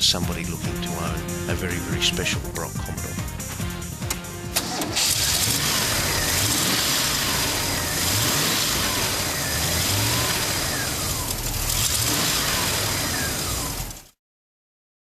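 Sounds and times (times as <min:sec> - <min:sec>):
car engine revving: 0:03.6 - 0:14.2.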